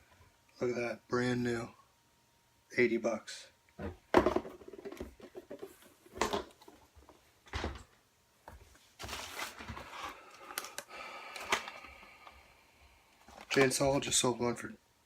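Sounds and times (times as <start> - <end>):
rustling and clattering: 3.8 - 8.0.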